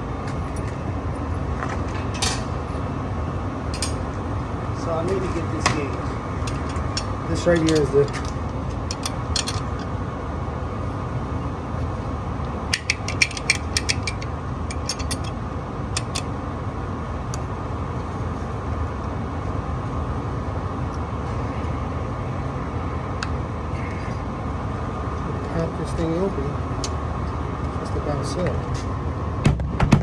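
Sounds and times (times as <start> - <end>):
steady low hum: 0.0 - 30.0
small tools clicking and tapping: 12.7 - 15.4, 16.0 - 16.3.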